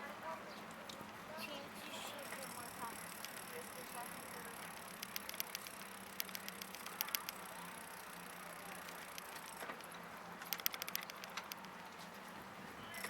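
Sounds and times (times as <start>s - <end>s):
bicycle tyres rolling: 0.6s - 13.0s
light metallic rattling and clicks: 2.2s - 12.3s.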